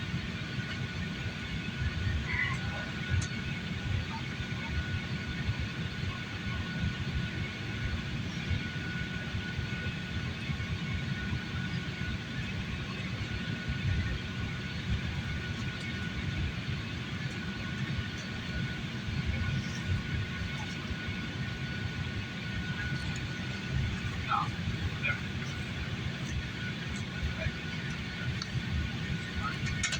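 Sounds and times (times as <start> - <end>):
airliner cabin engine rumble: 0.0 - 29.9.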